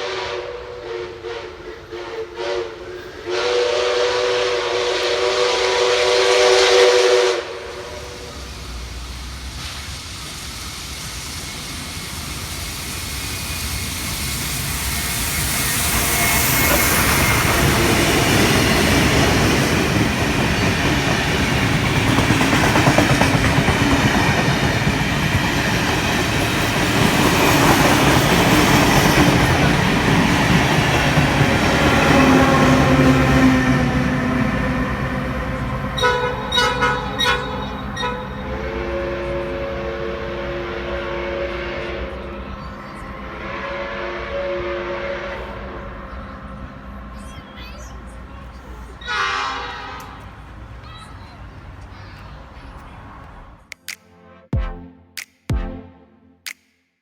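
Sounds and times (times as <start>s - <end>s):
train whistle toots: 0.0s - 8.6s, 14.7s - 19.3s, 34.9s - 46.3s, 49.0s - 50.2s
train passing: 0.0s - 54.5s.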